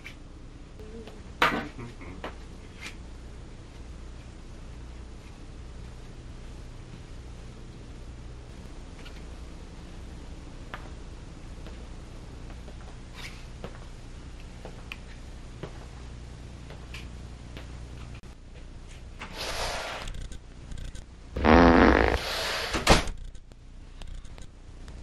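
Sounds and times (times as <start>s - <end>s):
hissing air: 19.3s - 20.1s, 21.4s - 23.0s
loud buzzy fart: 21.4s - 23.2s.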